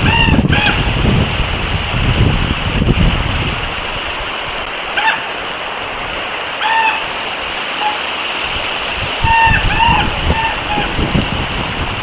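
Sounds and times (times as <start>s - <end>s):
steady outdoor hiss: 0.0s - 12.0s
short arching animal calls: 4.9s - 5.4s, 6.5s - 8.1s, 9.2s - 11.0s.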